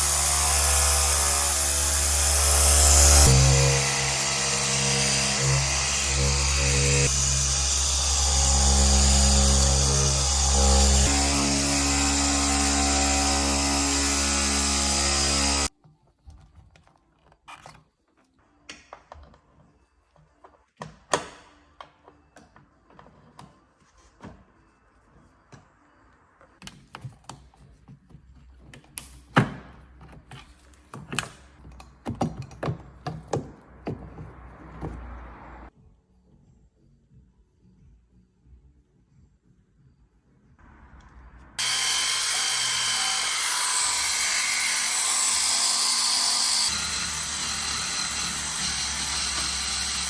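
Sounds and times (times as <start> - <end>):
tools clicking and knocking: 26.6 - 35.0.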